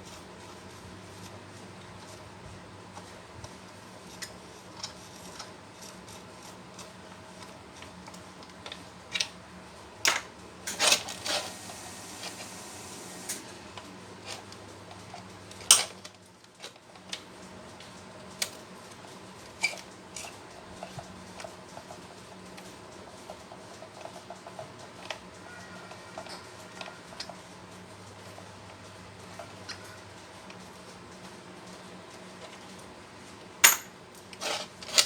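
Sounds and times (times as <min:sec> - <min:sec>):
metal tools clinking and knocking: 0:33.6 - 0:35.0.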